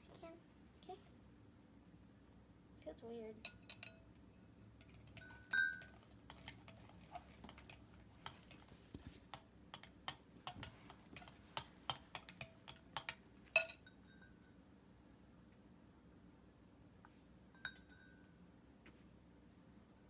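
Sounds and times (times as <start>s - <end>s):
spoon tapping mixing bowl: 3.4s - 14.4s, 17.6s - 18.3s
ringing clink: 13.6s - 14.5s, 17.6s - 18.4s.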